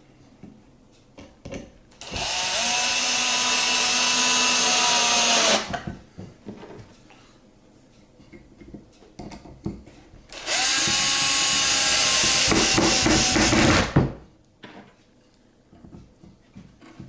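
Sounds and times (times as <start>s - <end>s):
power drill driving screw: 2.0s - 5.7s, 10.3s - 14.0s.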